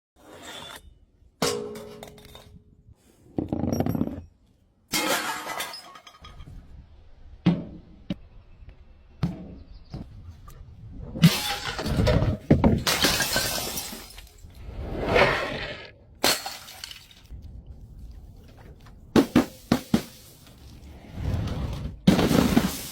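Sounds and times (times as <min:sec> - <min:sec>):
glass bottles shattering: 0:05.0 - 0:06.3, 0:12.8 - 0:14.4, 0:16.2 - 0:17.2, 0:22.1 - 0:22.9.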